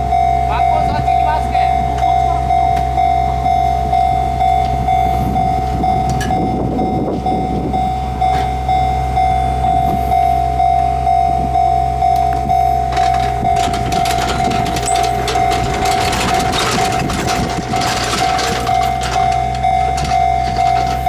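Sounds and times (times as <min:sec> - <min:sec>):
level-crossing warning bell: 0:00.0 - 0:21.0
steady low rumble: 0:00.0 - 0:21.0.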